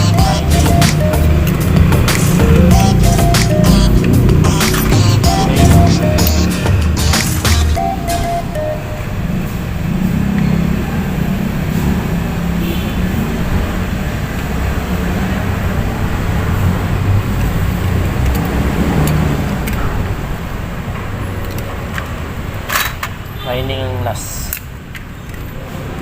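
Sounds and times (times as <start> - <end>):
low rumble of traffic: 0.0 - 26.0.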